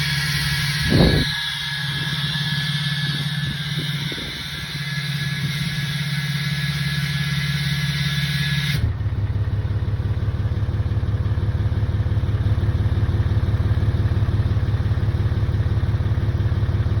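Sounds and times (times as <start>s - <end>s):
high turbo whistle: 0.0s - 9.0s
diesel engine running: 0.0s - 17.0s.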